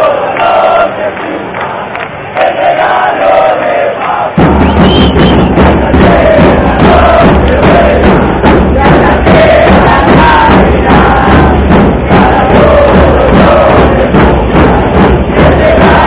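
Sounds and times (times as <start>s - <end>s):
crowd chanting: 0.0s - 16.0s
steady low beat: 4.2s - 16.0s.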